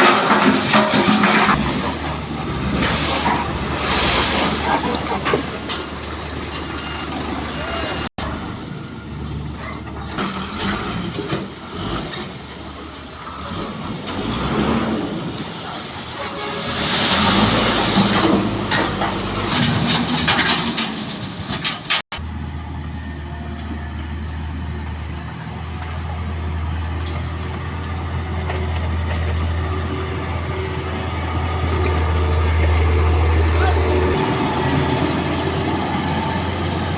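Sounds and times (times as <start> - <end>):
roadside vehicle noise: 0.0 - 36.9
voices: 6.6 - 8.6, 33.0 - 34.2
heavy vehicle engine humming: 21.1 - 36.9.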